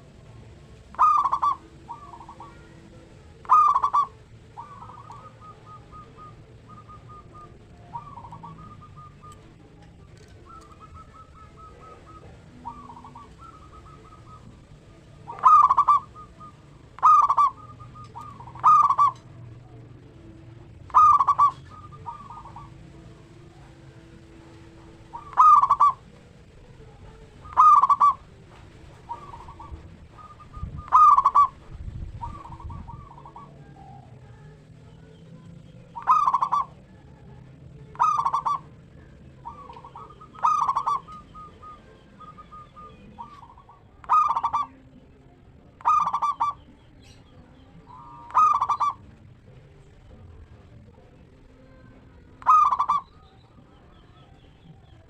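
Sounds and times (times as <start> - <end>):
doves cooing: 0.0 - 55.0
loud bird call: 0.9 - 9.5, 10.1 - 19.4, 20.8 - 23.0, 24.8 - 26.2, 27.4 - 34.2, 35.9 - 36.9, 37.9 - 44.9, 45.8 - 49.0, 52.4 - 55.0.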